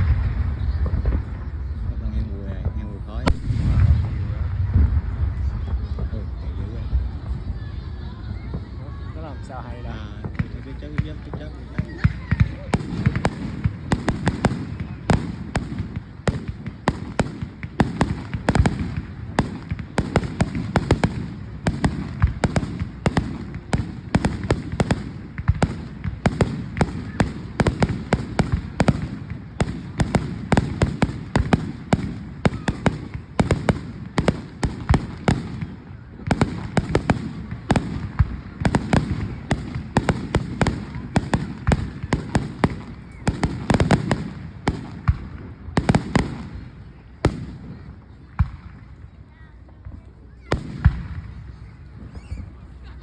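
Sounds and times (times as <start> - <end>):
fireworks bangs and crackles: 0.0 - 52.7
low rumble: 3.2 - 8.0.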